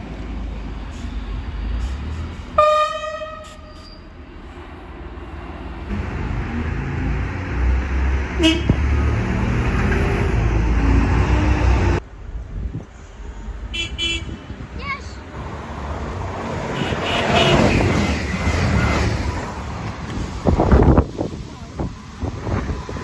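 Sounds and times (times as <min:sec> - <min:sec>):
train passing rumble: 0:00.0 - 0:23.0
train air horn blast: 0:02.6 - 0:03.8, 0:08.4 - 0:08.8, 0:16.7 - 0:18.2.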